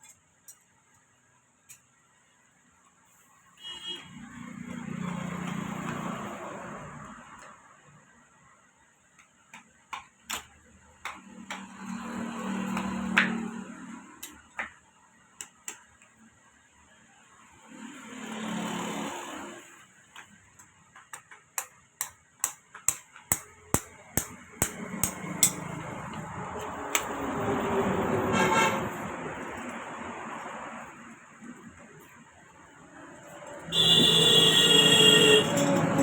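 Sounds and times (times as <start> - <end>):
passing vehicle: 4.1 - 7.7, 17.5 - 20.0, 24.5 - 36.0
sharp hammer taps: 21.1 - 26.3.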